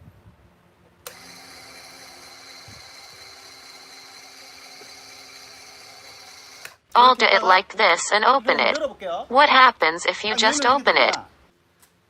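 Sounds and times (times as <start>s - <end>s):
electric suction pump humming: 1.0s - 6.9s.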